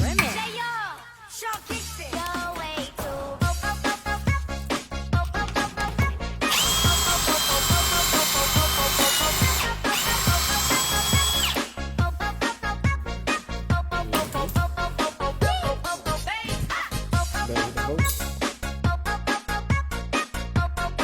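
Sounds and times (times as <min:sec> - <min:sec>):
dance music: 0:00.0 - 0:20.3
power tool motor whining: 0:05.4 - 0:11.9.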